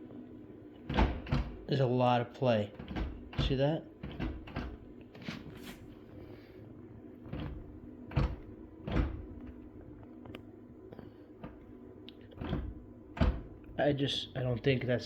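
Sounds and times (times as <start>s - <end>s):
oven door knocking on hinge: 2.8s - 4.8s.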